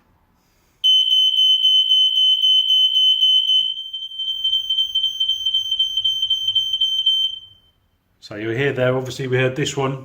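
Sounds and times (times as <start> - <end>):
smoke alarm high-pitched tone: 0.8 - 7.9.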